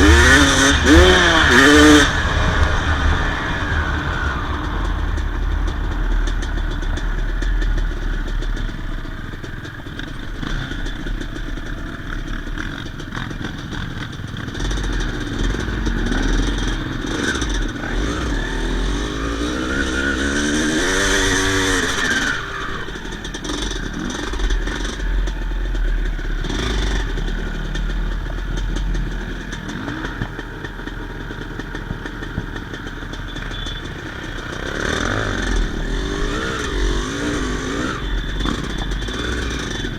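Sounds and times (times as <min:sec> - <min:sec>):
low rumble: 0:00.0 - 0:13.6, 0:14.8 - 0:39.9
dirt bike engine revving: 0:00.0 - 0:39.9.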